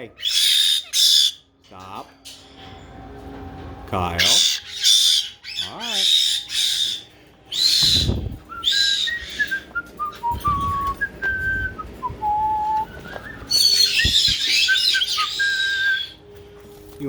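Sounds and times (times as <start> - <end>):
parrot screeching: 0.1 - 1.5, 4.2 - 9.6, 13.5 - 16.2
whistled notes: 4.1 - 16.2.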